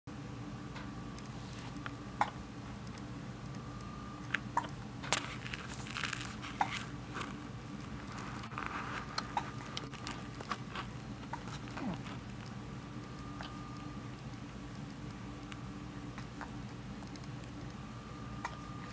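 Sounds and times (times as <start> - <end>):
low room hum: 0.1 - 18.9
person hiccuping: 2.2 - 2.4
soft rustling: 5.1 - 12.5.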